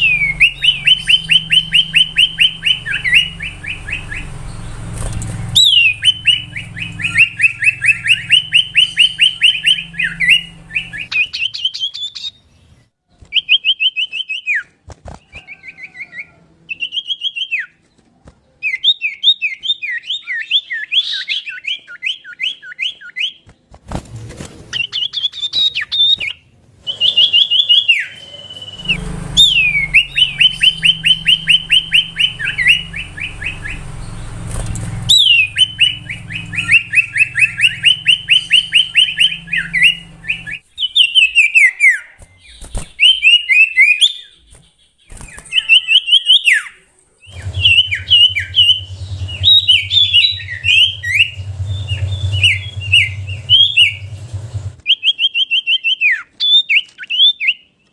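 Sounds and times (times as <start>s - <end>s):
bird singing whistled notes: 0.0s - 12.6s, 24.8s - 57.7s.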